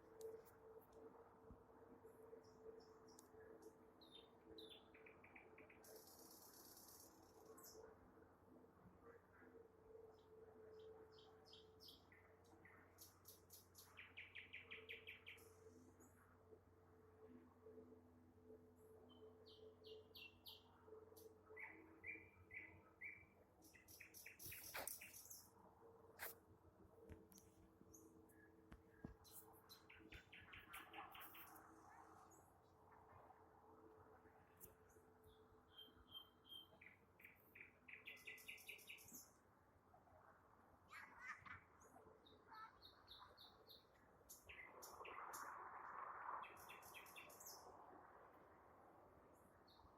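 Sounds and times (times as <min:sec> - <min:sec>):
nightingale singing: 0:35.7 - 0:39.1.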